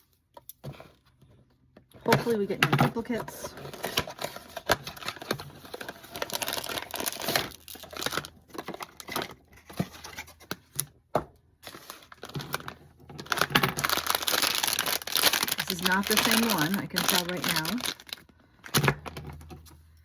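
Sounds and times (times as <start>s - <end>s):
packaging tearing and crinkling: 3.5s - 10.8s, 11.6s - 19.4s.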